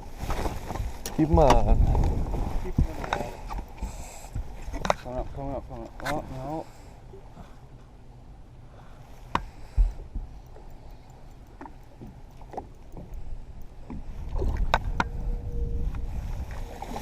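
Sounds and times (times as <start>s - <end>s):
wind and water rumbling: 0.0s - 17.0s
knocks and clicks on a boat: 0.6s - 6.2s, 9.3s - 15.2s.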